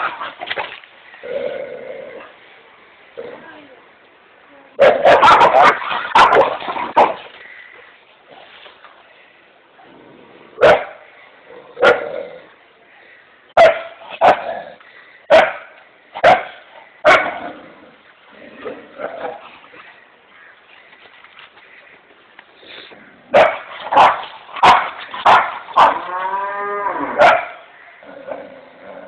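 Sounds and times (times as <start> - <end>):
dog barking: 4.8 - 7.2, 10.6 - 11.0, 13.6 - 14.4, 15.3 - 15.6, 16.2 - 16.5, 17.1 - 17.4, 23.3 - 26.0, 27.2 - 27.6.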